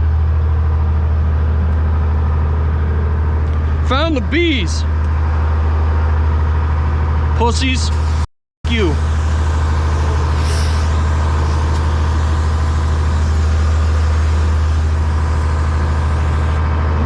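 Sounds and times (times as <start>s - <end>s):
diesel engine idling: 7.7s - 16.6s.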